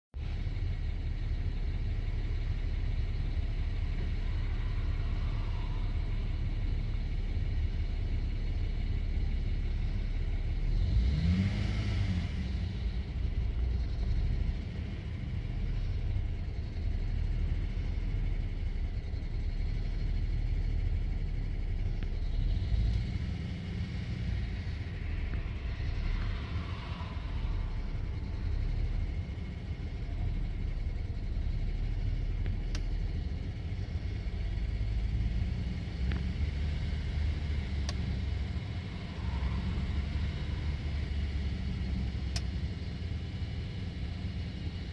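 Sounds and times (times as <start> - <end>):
car engine idling roughly: 0.2 - 10.8, 12.9 - 44.9
engine revving: 10.5 - 16.0, 22.0 - 44.9.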